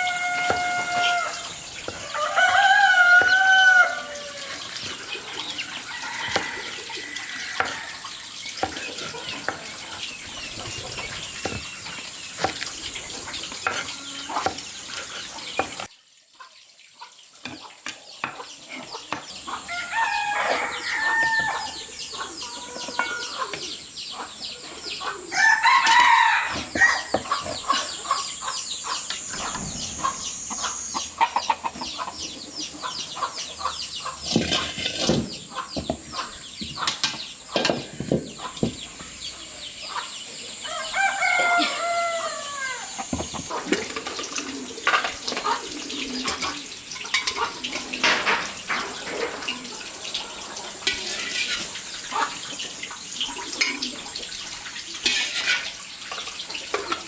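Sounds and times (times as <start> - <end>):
rooster crowing: 0.0 - 4.7, 5.6 - 8.0, 19.4 - 23.5, 25.3 - 27.2, 40.6 - 43.0
chickens clucking: 0.0 - 57.0.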